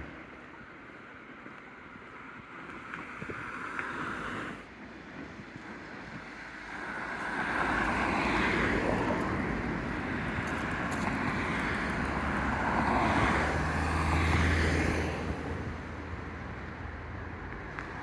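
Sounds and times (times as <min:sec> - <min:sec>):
low traffic rumble: 0:00.0 - 0:18.0
road traffic rushing: 0:00.0 - 0:18.0
vehicle passing: 0:07.0 - 0:18.0.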